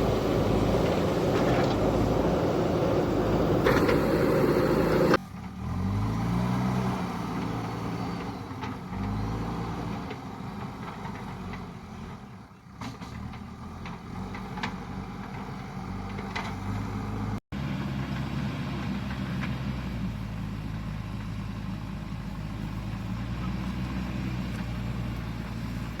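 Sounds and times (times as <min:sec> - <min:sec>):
diesel engine running under load: 0:00.0 - 0:06.1, 0:12.2 - 0:26.0.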